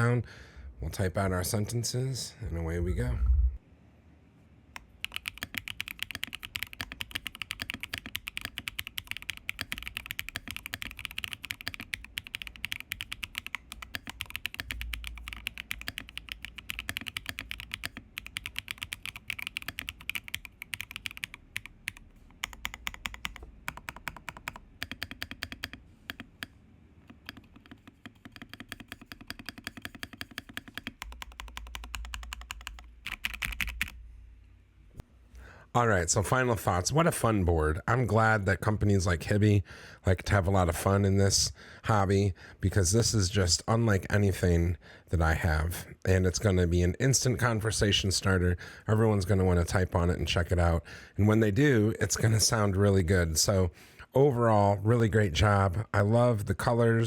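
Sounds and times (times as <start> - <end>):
mechanical keyboard typing: 4.8 - 34.0.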